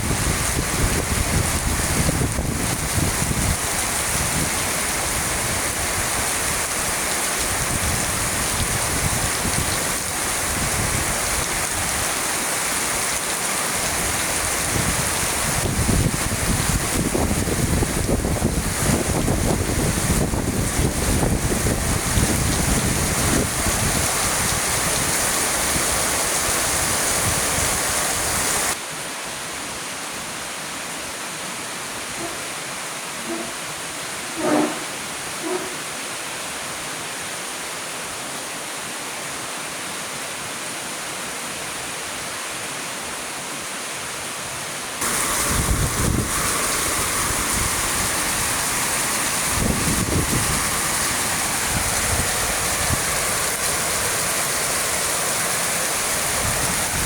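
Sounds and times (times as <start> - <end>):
wind gusting against microphone: 0.0 - 28.8, 45.0 - 57.0
heavy rain pouring: 0.0 - 30.9, 44.8 - 57.0.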